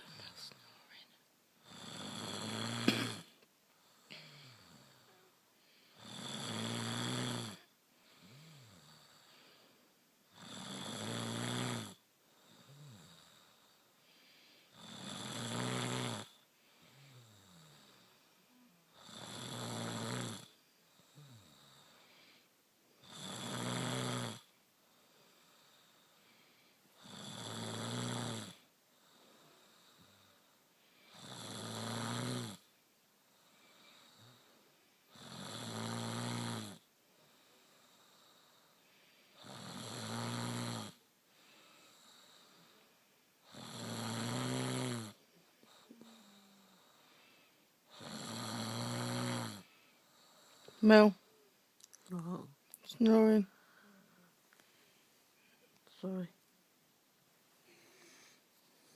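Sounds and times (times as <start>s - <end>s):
woman snoring: 1.6s - 9.5s, 10.3s - 13.8s, 14.7s - 22.2s, 23.0s - 24.5s, 26.9s - 28.7s, 31.0s - 32.7s, 35.1s - 36.9s, 39.4s - 42.8s, 43.4s - 47.3s, 47.9s - 49.7s, 50.3s - 51.2s, 52.0s - 54.3s
soft breathing: 3.7s - 6.1s, 7.9s - 10.0s, 12.2s - 14.8s, 20.5s - 23.1s, 24.8s - 27.0s, 28.9s - 31.3s, 33.2s - 35.1s, 37.0s - 39.5s, 41.2s - 43.3s, 45.2s - 48.0s, 49.6s - 51.6s, 53.5s - 56.1s, 57.5s - 58.9s.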